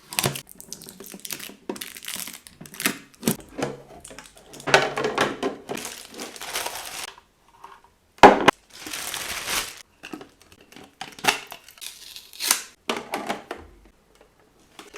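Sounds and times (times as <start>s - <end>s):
packaging crinkling and tearing: 0.0s - 3.4s, 5.7s - 7.1s, 8.6s - 9.8s, 11.2s - 12.8s.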